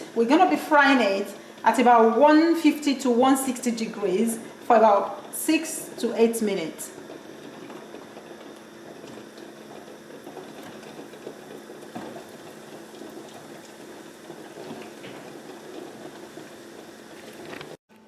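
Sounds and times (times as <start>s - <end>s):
deep-frying sizzle: 4.0s - 17.8s
oil popping: 6.9s - 17.8s.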